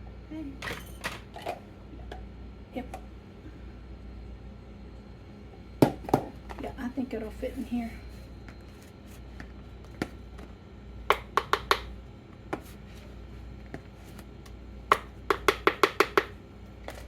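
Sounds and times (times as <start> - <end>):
utensil tapping bowl: 11.1 - 11.9.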